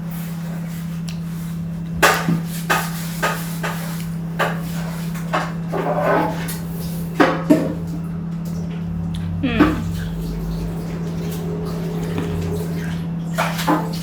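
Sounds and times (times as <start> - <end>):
steady low hum: 7.9 - 14.0.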